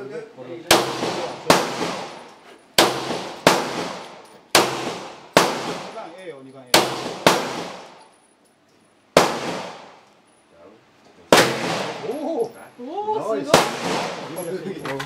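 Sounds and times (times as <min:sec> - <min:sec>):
pistol shots: 0:00.7 - 0:06.1, 0:06.7 - 0:08.0, 0:09.2 - 0:10.0, 0:11.3 - 0:12.1, 0:13.5 - 0:14.3.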